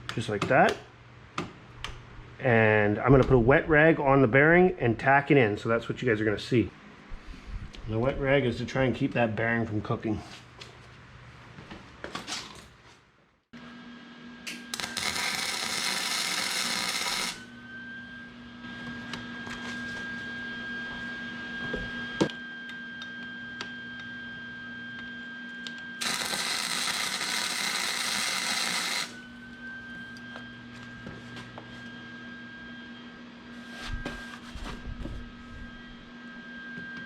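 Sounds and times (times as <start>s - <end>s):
electrical hum: 0.0s - 12.3s, 13.6s - 37.0s
welding arc hiss: 14.5s - 17.5s, 26.0s - 29.2s.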